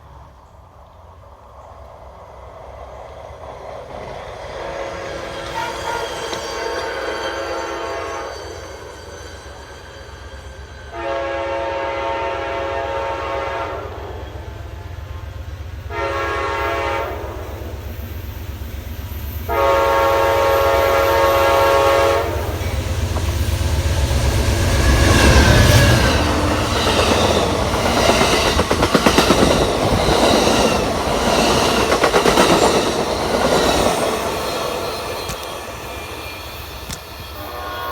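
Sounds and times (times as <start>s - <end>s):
train horn blast: 4.6s - 8.6s, 10.9s - 14.5s, 15.9s - 17.7s, 19.5s - 22.9s, 37.3s - 37.9s
train wheels clickety-clack: 22.2s - 37.9s.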